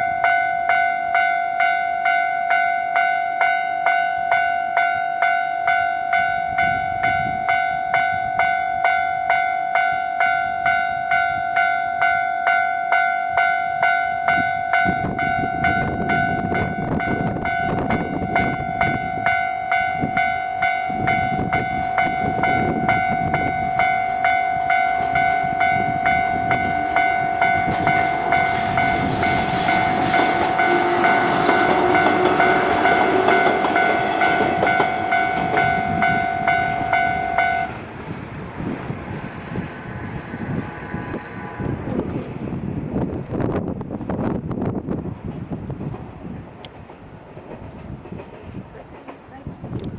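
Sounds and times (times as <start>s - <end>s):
train rumbling with wheel clatter: 13.3s - 49.9s.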